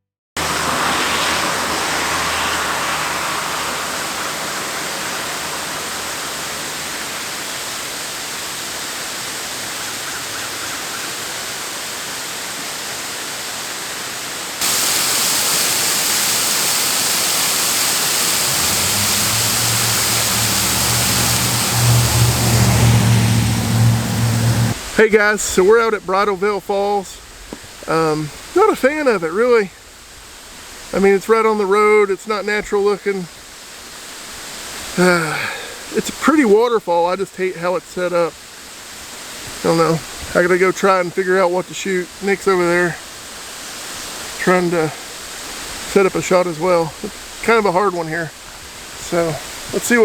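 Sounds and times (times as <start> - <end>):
vehicle engine hum: 0.4 - 7.4, 14.6 - 25.0
waterfall rushing: 0.4 - 25.1, 37.3 - 50.0.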